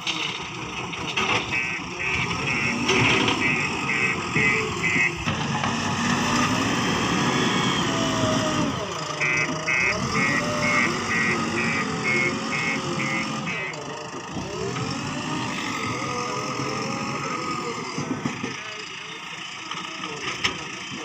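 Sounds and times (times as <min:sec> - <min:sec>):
heavy diesel machinery running: 0:00.0 - 0:21.0
rapid electronic beeping: 0:01.5 - 0:05.2, 0:09.2 - 0:13.9.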